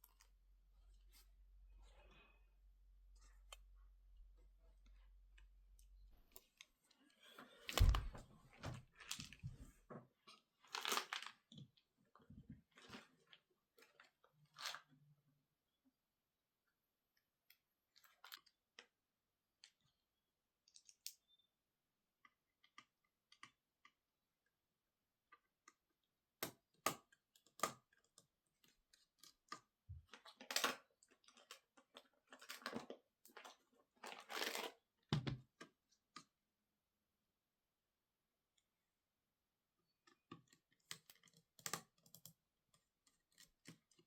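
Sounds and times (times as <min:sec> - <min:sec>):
small tools clicking and tapping: 0:40.0 - 0:44.0.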